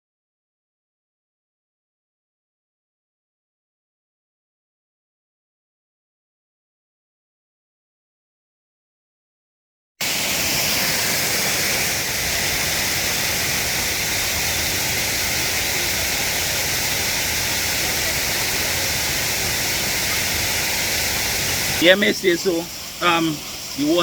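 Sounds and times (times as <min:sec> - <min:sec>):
waterfall rushing: 0:10.0 - 0:24.0.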